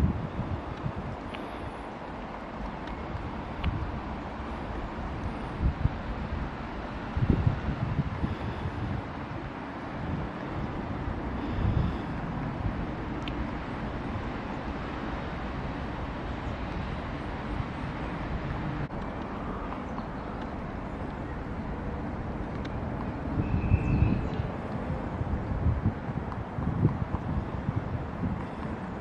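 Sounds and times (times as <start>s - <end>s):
steady low rumble: 0.0s - 29.0s
wind buffeting microphone: 0.0s - 29.0s.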